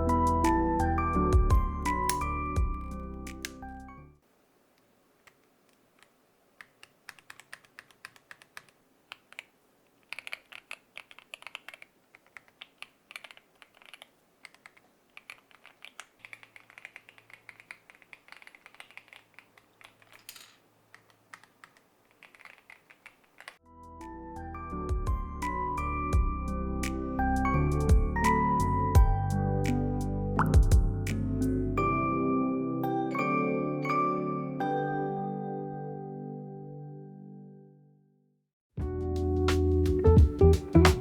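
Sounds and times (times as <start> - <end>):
mechanical keyboard typing: 5.3 - 23.6.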